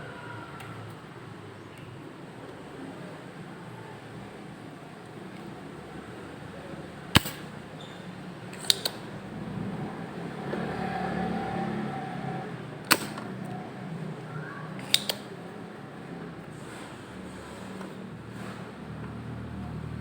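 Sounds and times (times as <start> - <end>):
sharp tool clicks: 7.2 - 7.6, 8.6 - 9.1, 12.9 - 13.3, 14.8 - 15.4.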